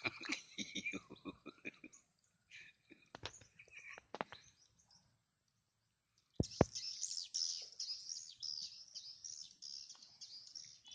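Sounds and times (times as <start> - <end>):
high-pitched bird chirping: 6.4 - 10.9.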